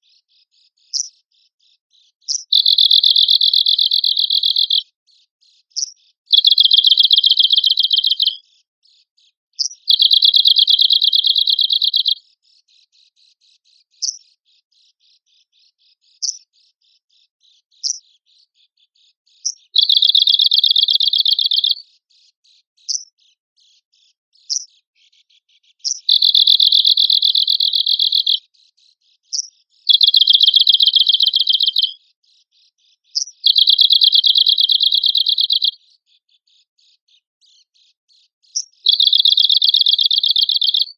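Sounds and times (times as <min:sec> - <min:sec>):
warbler trills: 0:00.0 - 0:40.9.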